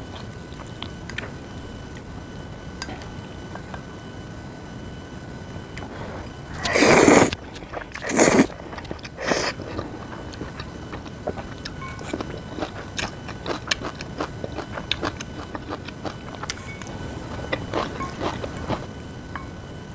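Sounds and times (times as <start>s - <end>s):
eating noodles and crunchy kimchi: 5.8s - 19.0s
chewing with crisp clicks: 6.6s - 19.5s.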